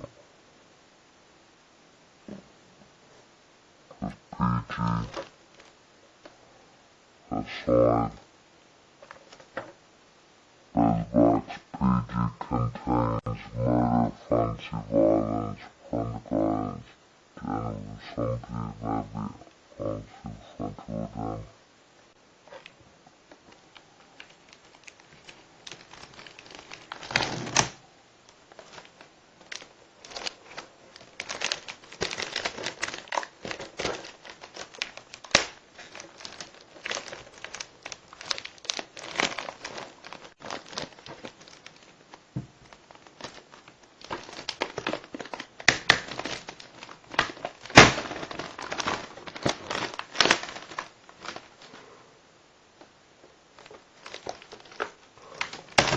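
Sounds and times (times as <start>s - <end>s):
plastic wrapping crinkling: 4.8s - 6.4s, 22.4s - 51.9s, 52.8s - 55.9s.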